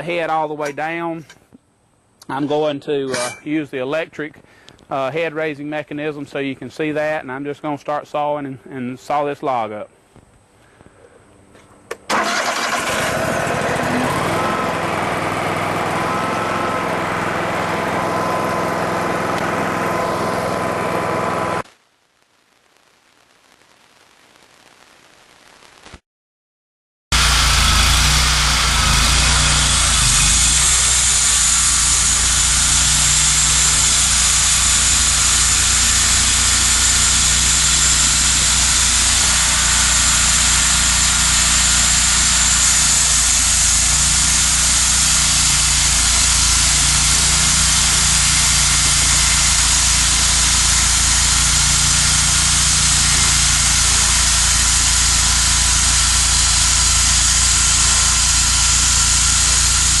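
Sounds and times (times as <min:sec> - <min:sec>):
sawmill engine under load: 0:12.1 - 0:21.6, 0:27.1 - 1:00.0
band blade hissing through wood: 0:28.0 - 1:00.0.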